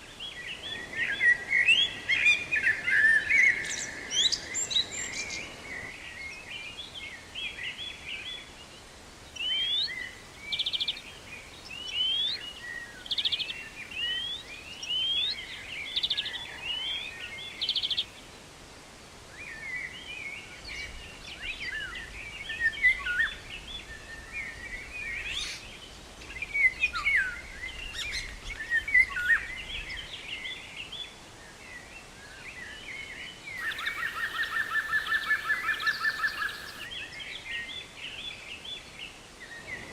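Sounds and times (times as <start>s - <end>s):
songbirds chirping and trilling: 9.2s - 18.5s, 29.6s - 39.1s.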